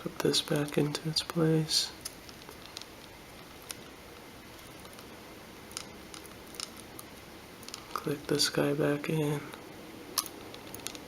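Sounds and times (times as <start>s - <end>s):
steady hiss: 0.0s - 11.0s
small parts clicking: 10.2s - 11.0s.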